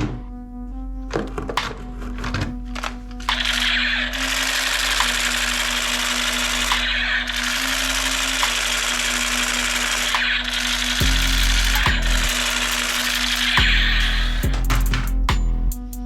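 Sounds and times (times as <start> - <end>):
toy gun rapid rattle: 2.8 - 14.1.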